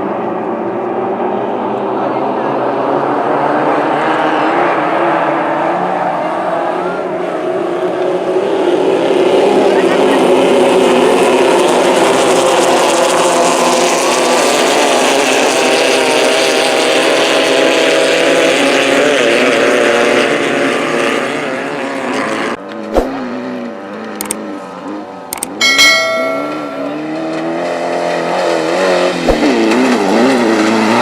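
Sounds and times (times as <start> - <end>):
race car engines revving: 0.0 - 31.0.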